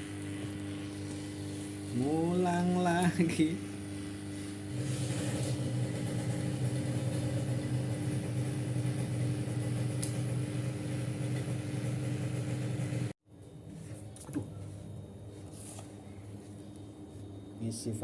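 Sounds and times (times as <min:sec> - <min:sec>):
electric motor humming: 0:00.0 - 0:13.2.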